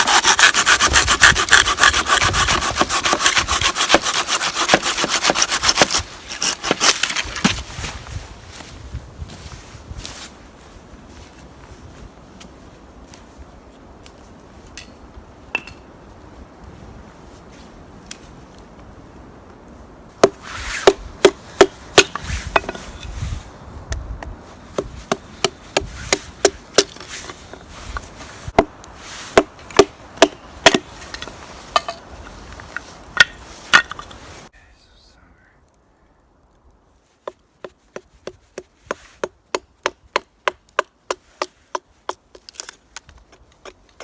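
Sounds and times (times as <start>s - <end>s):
wood being chopped: 0.0s - 7.7s, 20.2s - 22.8s, 23.9s - 27.3s, 28.6s - 32.0s, 33.1s - 34.1s, 37.2s - 44.0s.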